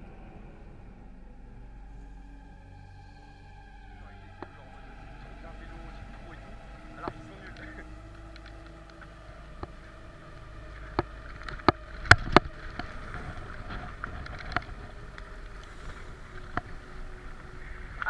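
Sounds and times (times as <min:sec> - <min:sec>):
bicycles rolling: 0:03.9 - 0:18.0.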